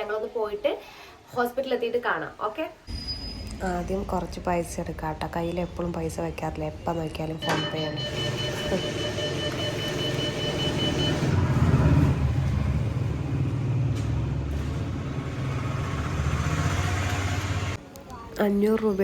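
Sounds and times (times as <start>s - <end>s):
low machine rumble: 2.9s - 17.8s
rapid electronic beeping: 7.4s - 11.4s.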